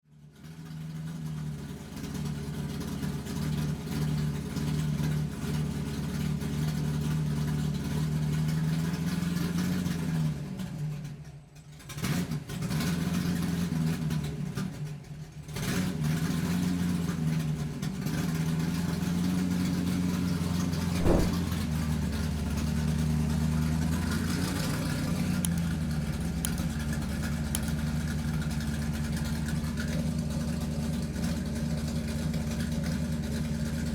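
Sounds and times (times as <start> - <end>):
sharp knock: 21.0 - 21.4.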